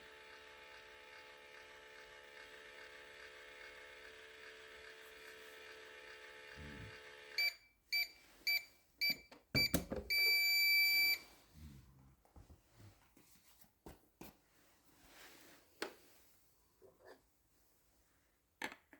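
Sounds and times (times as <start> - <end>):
toy microwave beeping: 6.9 - 11.2.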